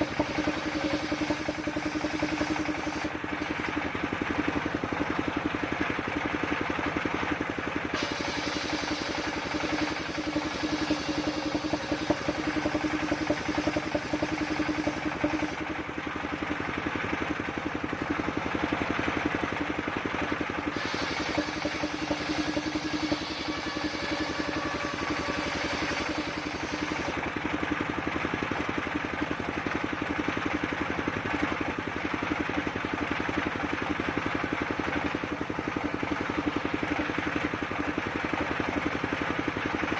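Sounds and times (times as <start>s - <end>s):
high-pitched sawing noise: 0.0s - 3.2s, 8.0s - 15.6s, 20.7s - 27.2s
sawmill engine running: 0.0s - 39.9s.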